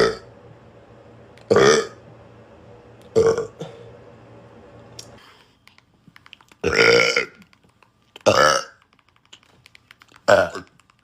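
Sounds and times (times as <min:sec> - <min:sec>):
man burping: 0:01.5 - 0:02.0, 0:03.1 - 0:03.8, 0:06.6 - 0:07.4, 0:08.2 - 0:08.8.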